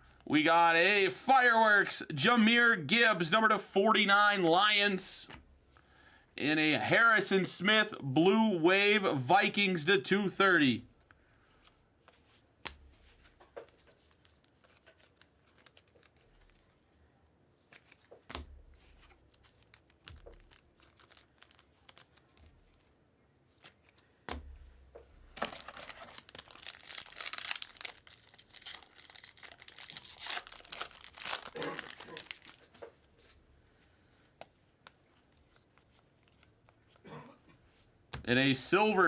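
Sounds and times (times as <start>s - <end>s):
cards clicking and tapping: 17.7s - 22.9s, 23.6s - 28.0s
foil card pack tearing and crinkling: 18.8s - 22.8s, 25.4s - 32.7s.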